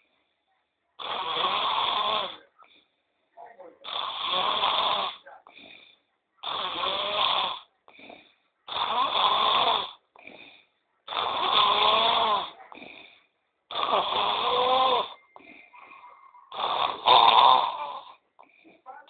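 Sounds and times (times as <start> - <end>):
man snoring: 1.0 - 2.4, 3.8 - 18.6
faint breath: 2.4 - 3.3, 5.4 - 6.2, 7.8 - 8.7, 10.1 - 11.0, 12.5 - 13.5, 15.1 - 16.5, 18.4 - 18.9.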